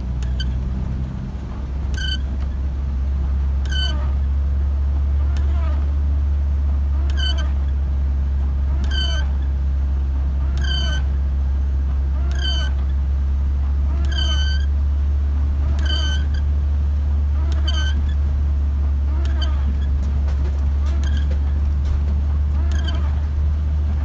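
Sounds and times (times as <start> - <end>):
steady low drone: 0.0 - 24.0
short high-pitched squeak: 1.9 - 2.3, 7.0 - 7.6, 8.7 - 9.5, 10.6 - 11.1, 12.3 - 12.8, 14.0 - 14.7, 15.6 - 16.4, 17.4 - 18.1, 21.0 - 21.3, 22.5 - 23.2.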